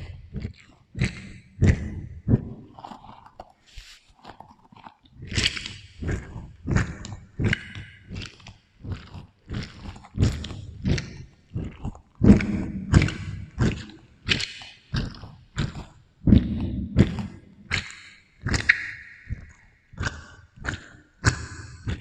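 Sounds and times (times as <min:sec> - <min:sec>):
chewing juicy fruit: 0:00.0 - 0:22.0.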